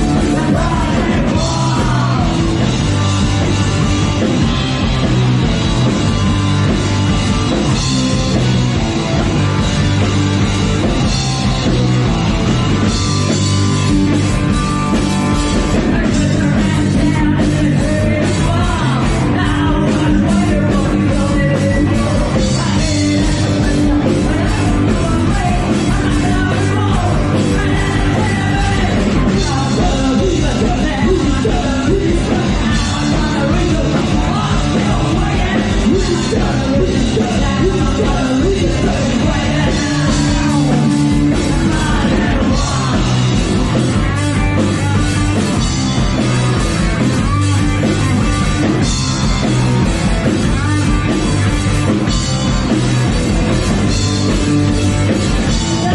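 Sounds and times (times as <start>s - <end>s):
person singing: 0.0s - 5.0s, 15.4s - 46.3s, 53.8s - 55.9s
punk rock band playing: 0.0s - 55.9s.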